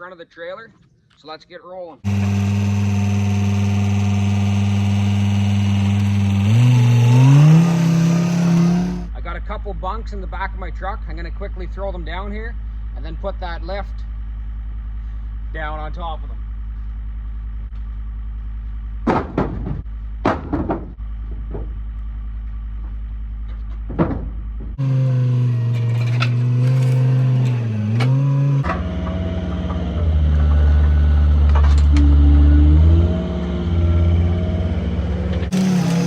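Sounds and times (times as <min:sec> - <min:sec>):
engine idling: 0:02.1 - 0:09.1
engine running under load: 0:02.1 - 0:09.1, 0:20.8 - 0:36.0
wooden bunks thrown down: 0:19.0 - 0:21.7, 0:23.8 - 0:24.8.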